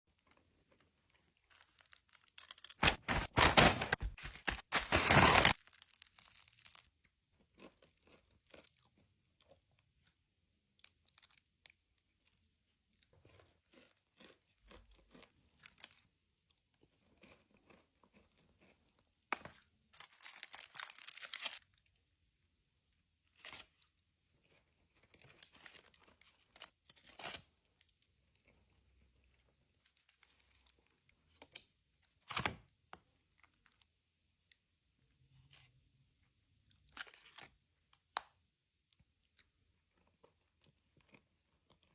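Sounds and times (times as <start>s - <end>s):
crisps being crunched and chewed: 0.1s - 10.1s, 10.8s - 21.8s, 38.9s - 41.9s
packet crinkling: 1.6s - 6.8s.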